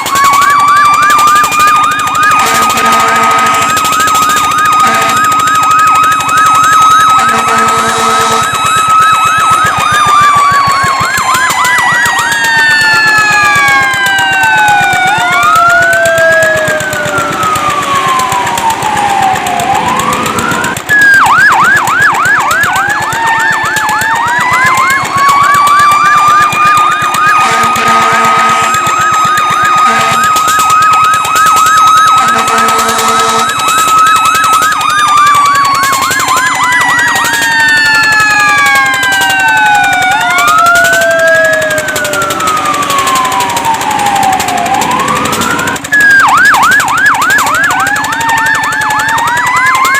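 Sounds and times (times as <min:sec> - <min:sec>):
fire truck sirens wailing: 0:00.0 - 0:49.9
held high siren tone: 0:00.0 - 0:49.9
siren yelp: 0:00.0 - 0:49.9
horn blasts: 0:02.4 - 0:04.0, 0:04.7 - 0:05.4, 0:07.0 - 0:08.6, 0:27.4 - 0:29.2, 0:29.8 - 0:30.4, 0:32.1 - 0:33.6.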